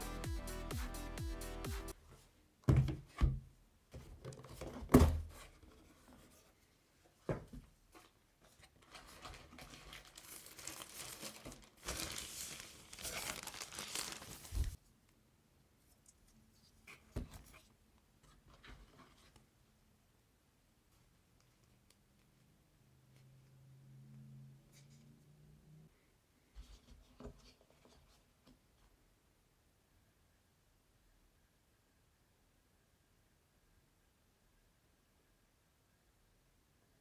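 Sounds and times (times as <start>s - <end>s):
packaging tearing and crinkling: 9.6s - 14.8s.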